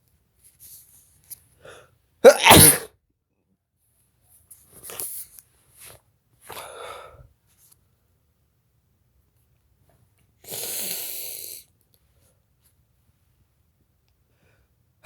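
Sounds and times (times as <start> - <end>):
man sneezing loudly: 2.2 - 2.9
quiet breathy sounds: 5.8 - 7.8.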